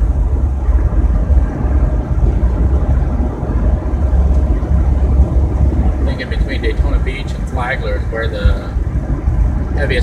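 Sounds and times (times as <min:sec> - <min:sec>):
van road and engine rumble: 0:00.0 - 0:10.0.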